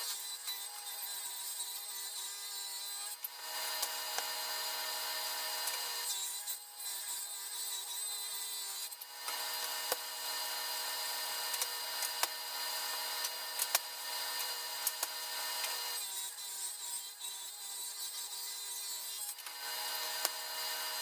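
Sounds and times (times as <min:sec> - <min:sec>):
table saw ripping wood: 0:00.0 - 0:21.0.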